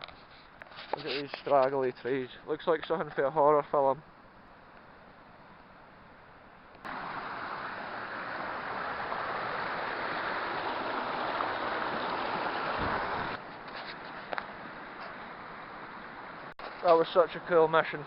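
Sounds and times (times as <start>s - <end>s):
stream water rushing: 6.8s - 13.4s, 14.5s - 18.0s.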